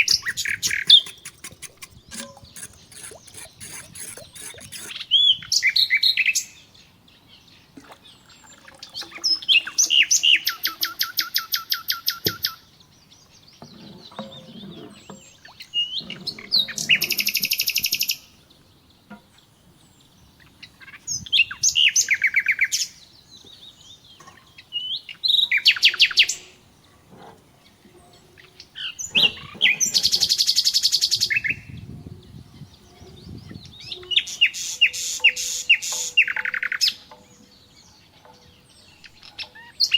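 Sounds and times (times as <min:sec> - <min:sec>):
songbird trilling: 0:00.0 - 0:06.5, 0:08.2 - 0:12.7, 0:13.4 - 0:37.5.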